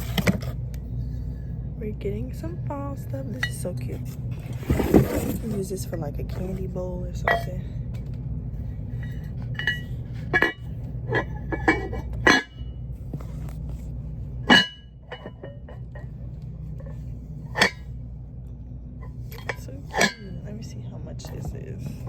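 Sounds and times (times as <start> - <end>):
steady low hum: 0.0 - 22.0
dishware clinking: 7.2 - 7.6, 9.1 - 12.6, 14.5 - 15.8, 17.5 - 17.9, 19.3 - 20.4.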